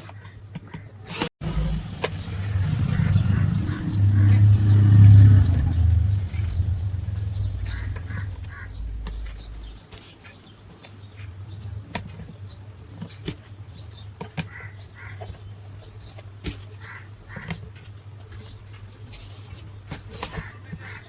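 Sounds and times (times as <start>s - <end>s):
electric fan motor humming: 1.4s - 9.8s.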